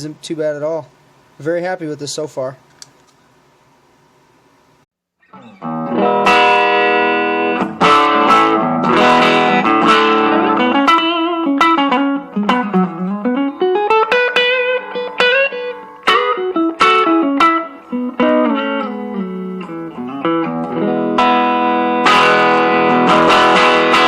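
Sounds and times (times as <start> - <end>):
fuzzed electric guitar: 5.2 - 24.0.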